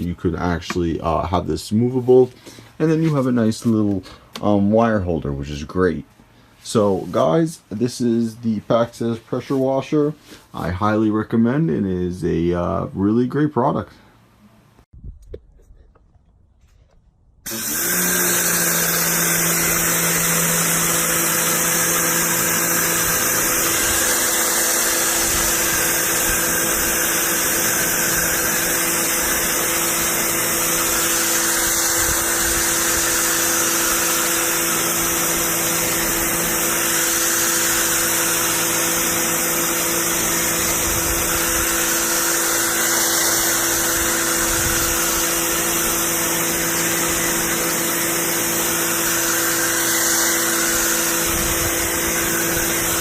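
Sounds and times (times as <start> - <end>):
electric pressure washer running: 17.4 - 53.0.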